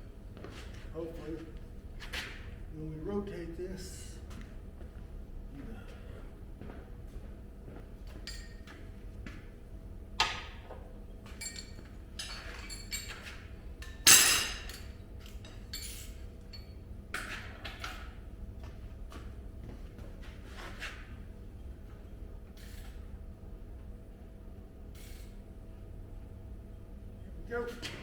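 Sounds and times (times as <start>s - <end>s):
metal tools clinking and scraping: 11.4s - 16.8s.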